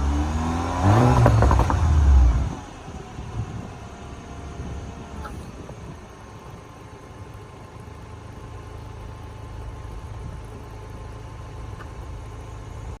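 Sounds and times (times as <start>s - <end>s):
car engine idling: 0.9s - 13.0s.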